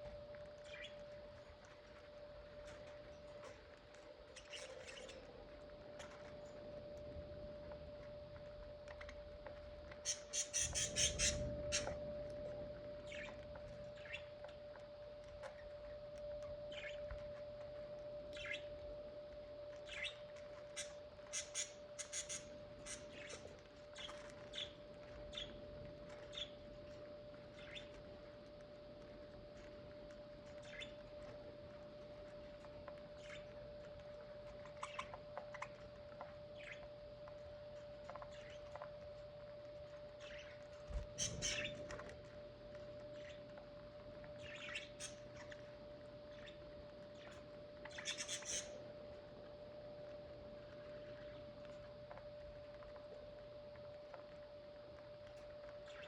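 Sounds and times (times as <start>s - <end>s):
faint steady hum: 0.0s - 56.0s
faint steady tone: 0.0s - 56.0s
budgerigars chirping: 10.0s - 12.0s, 13.1s - 14.3s, 18.3s - 18.6s, 19.9s - 24.7s, 30.6s - 31.0s, 34.7s - 35.7s, 36.6s - 36.8s, 40.2s - 42.1s, 44.4s - 45.6s, 47.2s - 48.8s.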